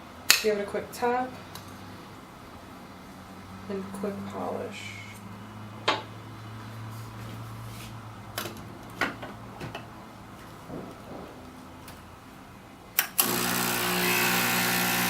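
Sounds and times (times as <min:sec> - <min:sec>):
espresso machine low hum: 0:13.2 - 0:15.0.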